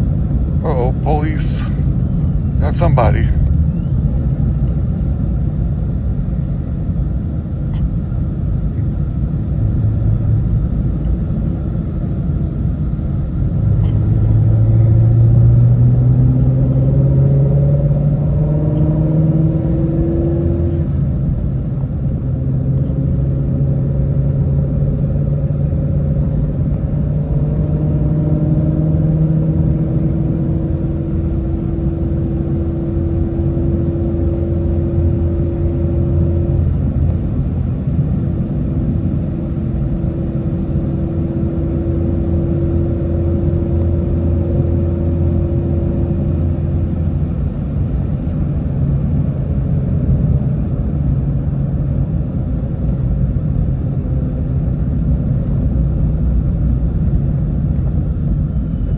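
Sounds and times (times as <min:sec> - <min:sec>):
low road rumble: 0:00.0 - 0:58.9
car engine accelerating: 0:14.0 - 0:50.4.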